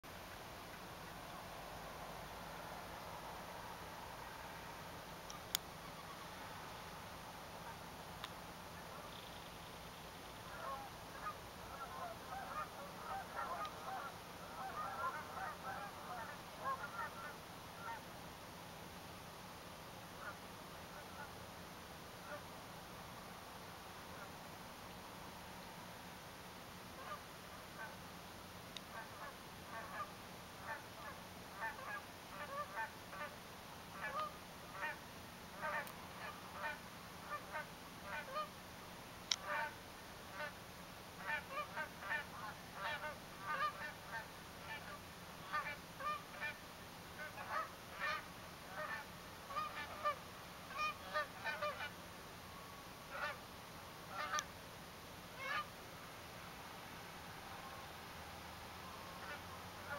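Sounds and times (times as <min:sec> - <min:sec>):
geese honking: 0:10.5 - 0:18.0, 0:20.2 - 0:21.3, 0:22.2 - 0:22.4, 0:27.0 - 0:27.2, 0:28.9 - 0:33.4, 0:34.0 - 0:35.0, 0:35.6 - 0:38.5, 0:39.3 - 0:40.6, 0:41.2 - 0:46.6, 0:47.2 - 0:51.9, 0:53.1 - 0:53.4, 0:54.1 - 0:54.5, 0:55.4 - 0:55.7, 0:58.8 - 0:59.9.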